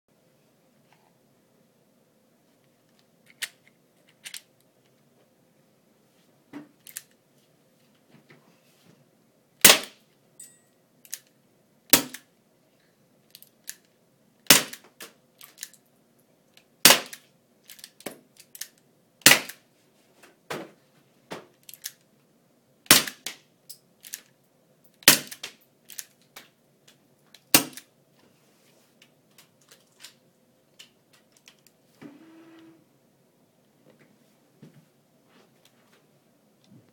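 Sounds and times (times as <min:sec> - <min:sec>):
airsoft revolver shots: 0:09.6 - 0:10.0, 0:11.9 - 0:12.2, 0:14.5 - 0:14.8, 0:16.8 - 0:17.2, 0:19.2 - 0:19.6, 0:22.9 - 0:23.3, 0:25.1 - 0:25.5.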